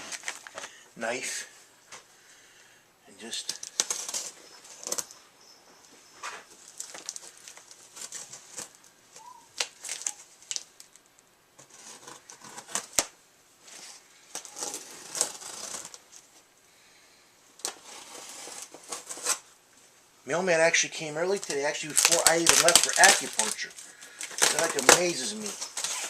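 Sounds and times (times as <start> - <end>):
tape tearing: 0.0 - 0.7, 3.4 - 5.2, 6.2 - 16.3, 17.6 - 19.5, 21.3 - 26.0
cardboard crinkling: 0.0 - 0.8, 3.3 - 5.2, 6.0 - 16.5, 17.6 - 19.5, 21.1 - 26.0
knife slitting packing tape: 14.4 - 16.0, 17.6 - 19.4, 22.0 - 26.0.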